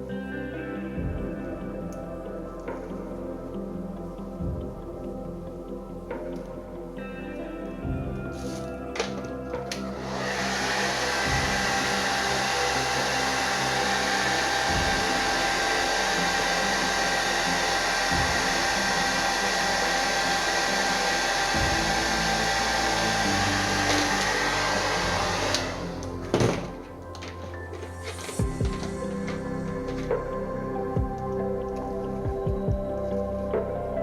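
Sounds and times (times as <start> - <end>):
hair dryer running: 9.7 - 30.3.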